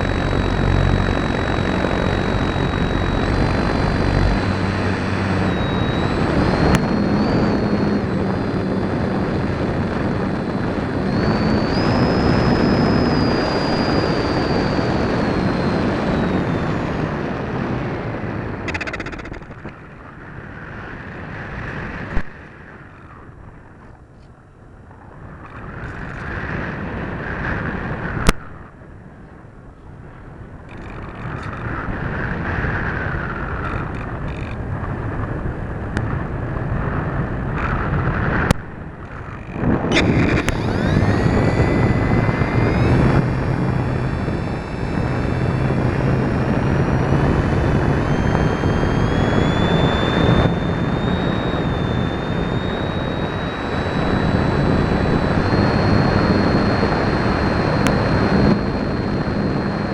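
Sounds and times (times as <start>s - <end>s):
sharp clicks: 0.0s - 8.6s, 18.6s - 19.9s, 38.5s - 46.4s
electric motor and propeller whine: 0.0s - 59.9s
wind rushing over microphone: 0.0s - 59.9s.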